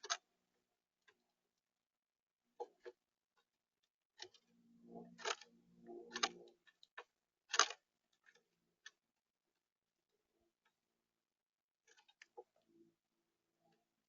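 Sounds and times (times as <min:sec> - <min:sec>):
low pitched sound: 0:04.4 - 0:06.7.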